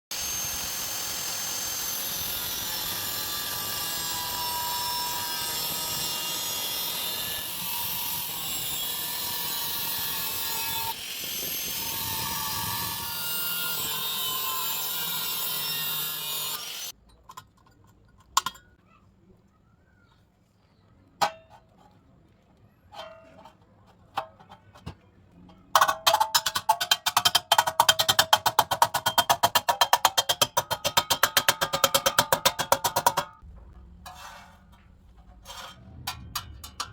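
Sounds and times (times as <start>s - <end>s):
harsh metalworking scrape: 32.0s - 36.9s.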